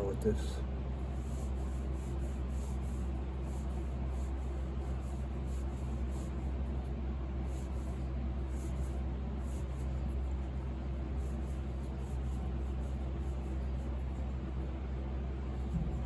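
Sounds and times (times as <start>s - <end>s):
low hum: 14.0s - 16.0s.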